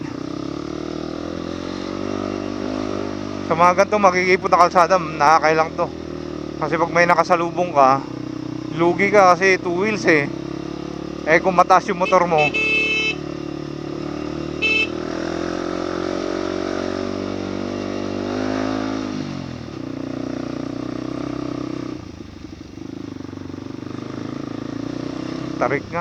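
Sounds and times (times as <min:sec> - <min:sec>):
motorcycle engine climbing: 0:00.0 - 0:26.0
short high beep: 0:12.0 - 0:13.2, 0:14.6 - 0:15.0.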